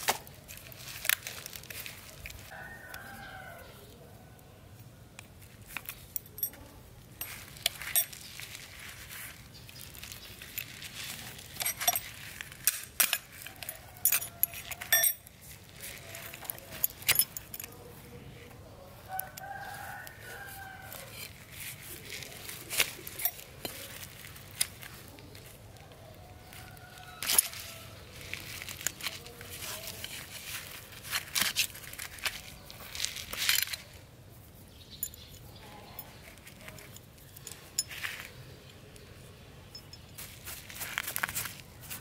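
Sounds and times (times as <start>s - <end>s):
rooster crowing: 2.5s - 4.6s, 18.9s - 21.2s, 26.1s - 28.2s.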